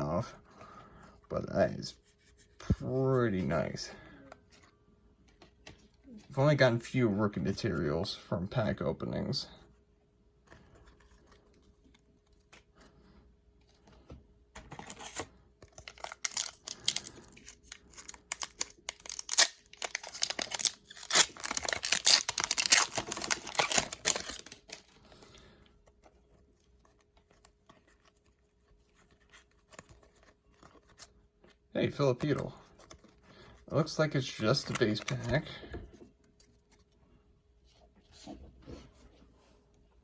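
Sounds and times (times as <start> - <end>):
wrapper tearing and crinkling: 14.8 - 25.0.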